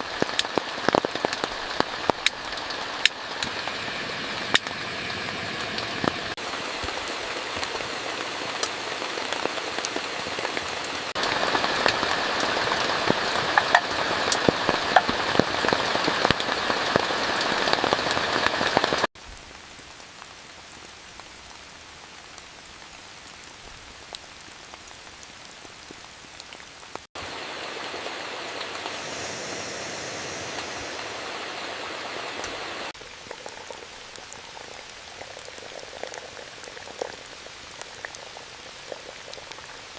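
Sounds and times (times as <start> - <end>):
heavy rain falling: 0.0 - 23.4, 25.0 - 33.0.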